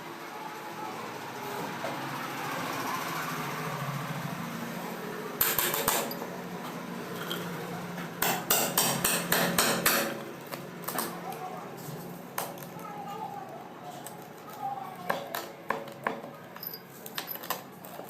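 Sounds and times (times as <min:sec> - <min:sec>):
hard tool tapping ceramic tiles: 0:08.2 - 0:10.2.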